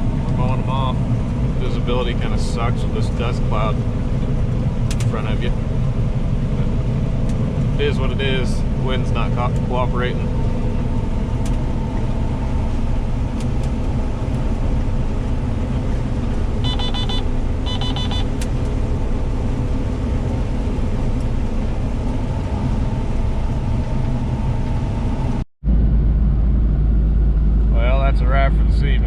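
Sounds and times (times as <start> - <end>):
combine harvester drone: 0.0 - 29.0
rapid electronic beeping: 16.6 - 18.4.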